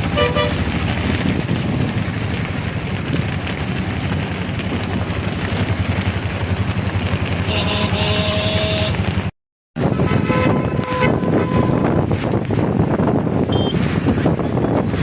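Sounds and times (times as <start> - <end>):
vehicle horn: 0.0 - 0.6, 7.4 - 9.0, 9.8 - 12.0
vehicle engine rumble: 0.0 - 15.0.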